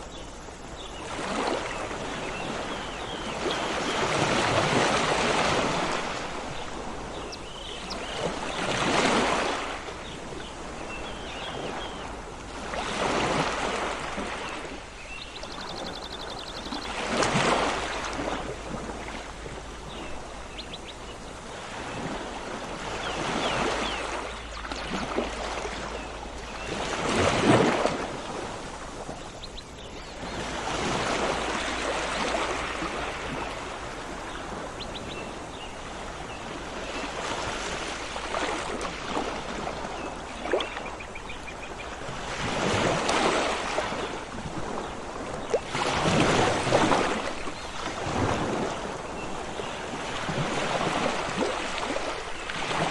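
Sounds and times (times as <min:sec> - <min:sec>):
sea waves washing ashore: 0:00.0 - 0:52.9
faint bird chirps: 0:07.2 - 0:08.7, 0:14.4 - 0:17.0.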